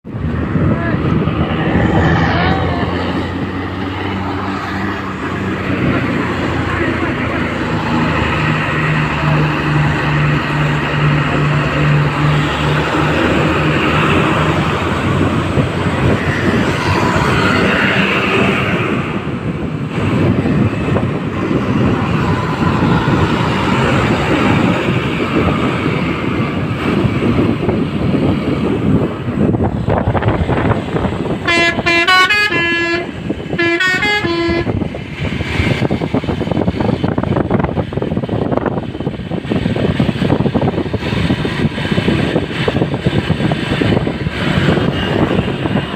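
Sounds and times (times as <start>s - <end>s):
vehicle and road noise: 0.0s - 45.9s
multi-tone bus horn melody: 31.3s - 35.0s.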